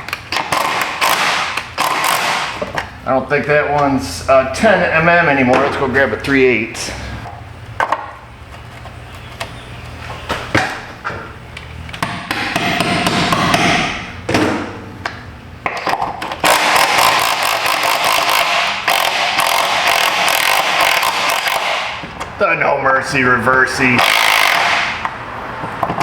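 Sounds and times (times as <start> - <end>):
ratchet wrench clicking: 0.5 - 2.3, 16.4 - 22.0, 24.0 - 24.9.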